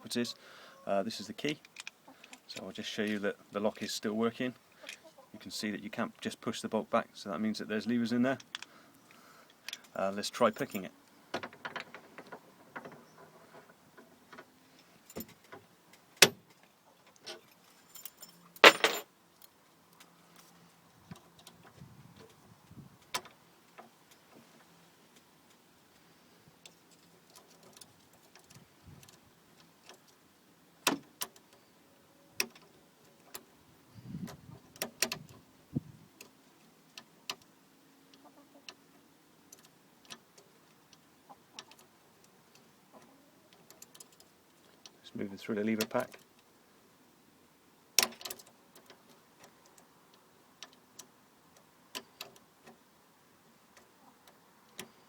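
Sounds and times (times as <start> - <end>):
lock picks clicking and scraping: 1.6 - 2.7, 8.4 - 8.7, 26.6 - 30.2, 48.0 - 49.9, 50.6 - 52.8.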